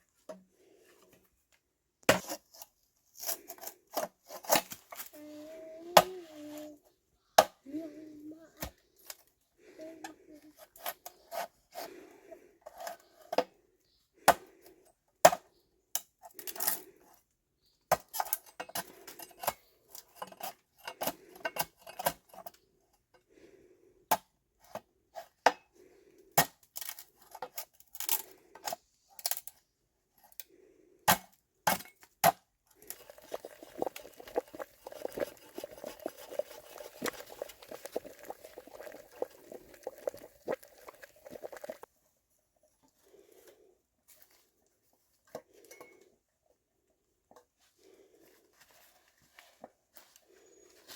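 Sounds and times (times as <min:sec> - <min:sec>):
liquid bubbling on the boil: 0:32.8 - 0:41.9
pots and utensils clinking: 0:32.8 - 0:41.9.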